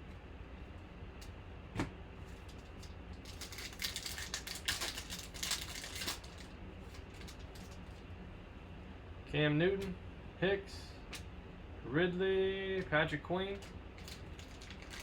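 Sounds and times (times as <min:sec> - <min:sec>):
foil wrapper crinkling: 0:02.3 - 0:08.0, 0:13.6 - 0:15.0.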